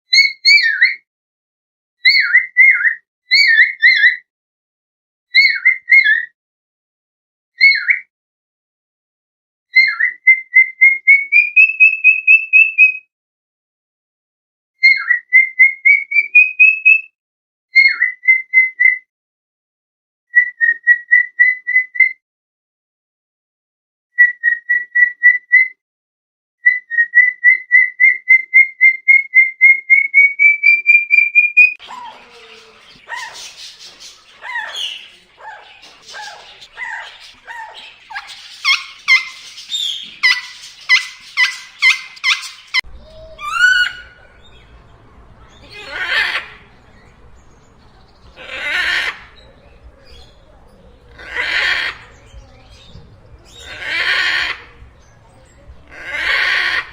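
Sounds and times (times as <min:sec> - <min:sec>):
parrot chirps and squawks: 0:00.1 - 0:01.0, 0:02.0 - 0:04.2, 0:05.4 - 0:06.3, 0:07.6 - 0:08.1, 0:29.9 - 0:47.6, 0:48.2 - 0:50.4, 0:51.0 - 0:55.0, 0:55.8 - 0:56.9
parrot whistling: 0:34.3 - 0:44.7.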